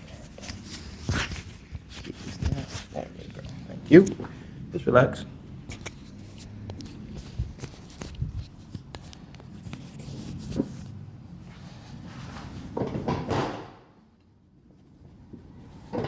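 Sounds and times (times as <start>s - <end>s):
rustling of body being handled: 0.0s - 3.4s.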